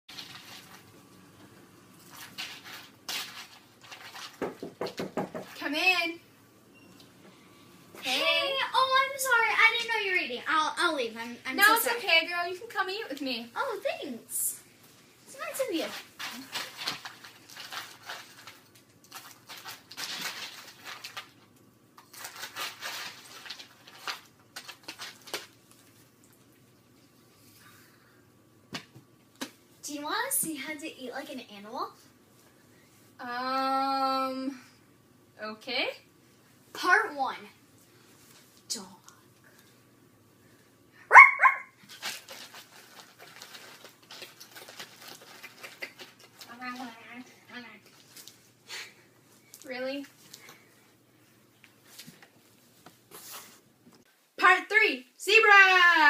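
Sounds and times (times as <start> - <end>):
eating crunching and clattering: 15.9 - 26.6, 41.8 - 47.0.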